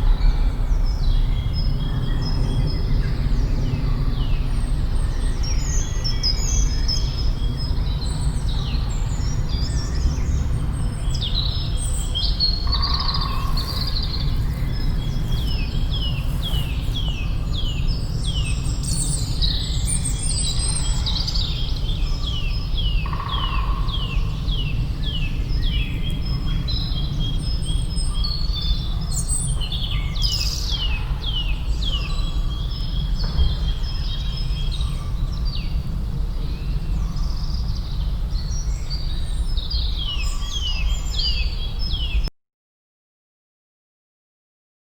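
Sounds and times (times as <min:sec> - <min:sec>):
wild birds singing and calling: 0:00.0 - 0:42.3
steady low rumble: 0:10.4 - 0:28.1.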